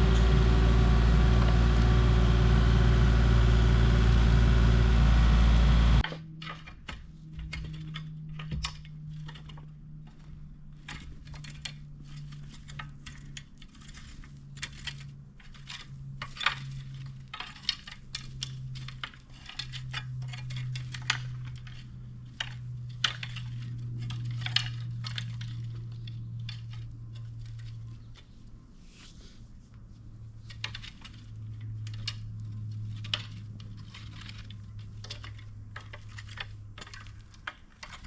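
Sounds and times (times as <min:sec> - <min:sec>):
engine humming: 0:00.0 - 0:06.1.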